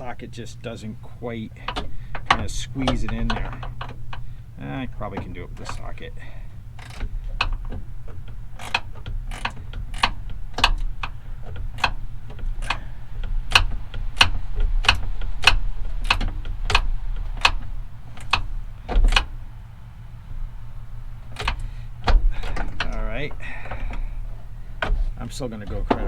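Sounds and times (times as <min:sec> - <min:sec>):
steady low hum: 0:00.0 - 0:26.0
socket ratchet clicking: 0:01.5 - 0:19.5, 0:21.2 - 0:25.2.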